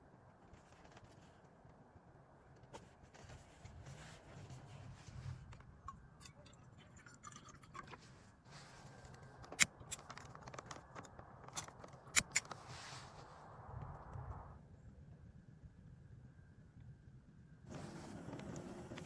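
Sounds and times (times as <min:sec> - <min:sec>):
sharp clicks and scrapes: 0:08.8 - 0:13.2.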